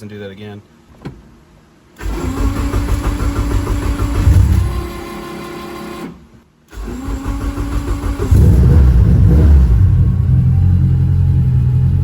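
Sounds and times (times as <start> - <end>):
car engine cranking and starting: 2.0 - 5.4, 6.0 - 12.0.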